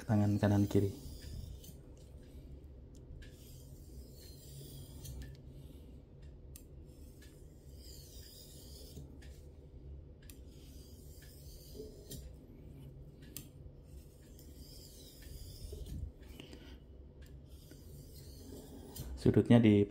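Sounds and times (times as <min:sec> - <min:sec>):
knife scraping on whetstone: 0:00.0 - 0:01.8, 0:03.3 - 0:05.3, 0:07.6 - 0:09.1, 0:10.5 - 0:12.3, 0:14.3 - 0:16.0, 0:17.5 - 0:19.2.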